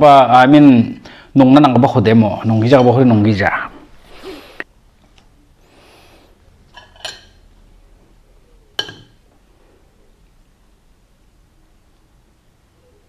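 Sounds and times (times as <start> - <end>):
tableware clinking: 6.7 - 7.4, 8.8 - 9.2.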